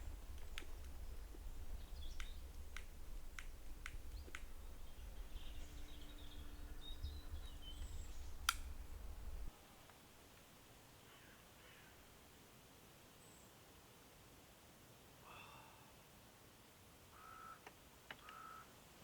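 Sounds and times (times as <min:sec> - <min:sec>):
wind rumble on microphone: 0:00.0 - 0:09.5
sharp clicks: 0:00.0 - 0:09.6
faint bird chirps: 0:00.0 - 0:09.8, 0:11.0 - 0:12.1, 0:13.2 - 0:13.6, 0:17.1 - 0:18.9.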